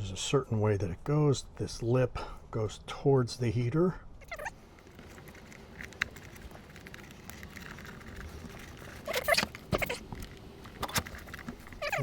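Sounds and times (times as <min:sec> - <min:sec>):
faint rustling and small clicks: 0:04.4 - 0:12.0.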